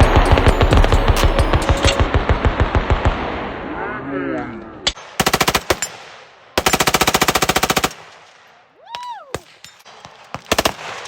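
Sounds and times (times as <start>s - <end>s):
automatic gunfire: 5.2s - 8.3s, 9.4s - 11.0s.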